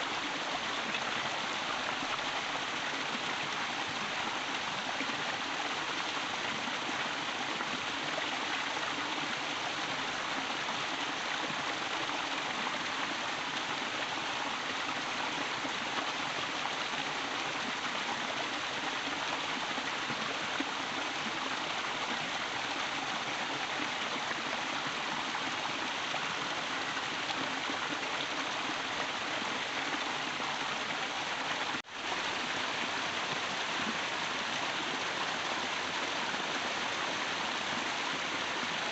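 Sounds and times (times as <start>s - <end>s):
steady rain hiss: 0.0s - 8.3s.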